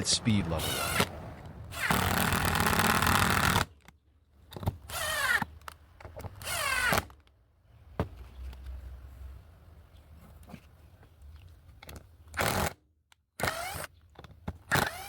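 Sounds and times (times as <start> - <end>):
impact driver driving screws: 0.6 - 1.1, 1.7 - 3.9, 4.5 - 7.2, 13.4 - 15.0.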